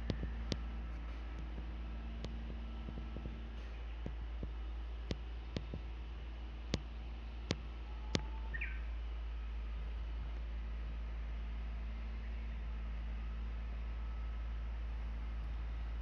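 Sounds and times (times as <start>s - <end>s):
sharp clicks: 0.0s - 5.9s, 6.7s - 8.3s
steady low rumble: 0.0s - 16.0s
faint bird call: 7.6s - 9.1s.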